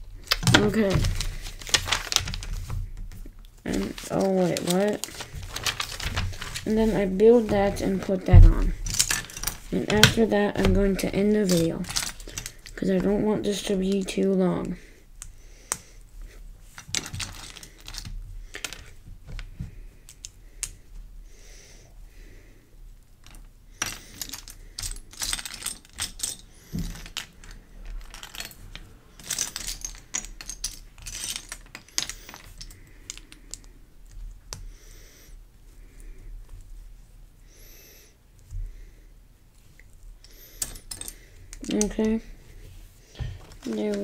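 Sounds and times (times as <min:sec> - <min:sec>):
pieces rustling: 0:00.0 - 0:21.1, 0:22.9 - 0:35.0, 0:39.5 - 0:44.0
plastic pieces snapping together: 0:00.2 - 0:06.7.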